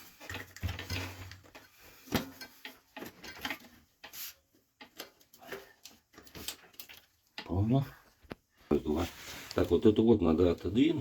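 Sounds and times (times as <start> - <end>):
hand tools and metal parts clicking: 0.0 - 7.6.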